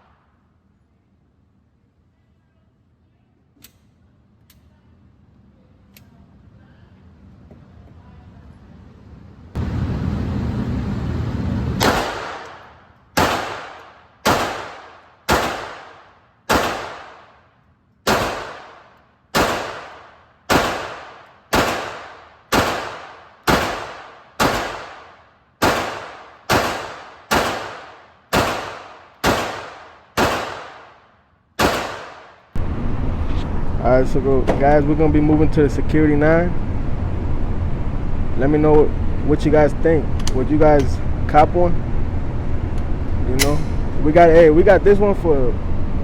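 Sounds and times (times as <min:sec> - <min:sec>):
pistol shots echoing indoors: 0:11.8 - 0:32.6.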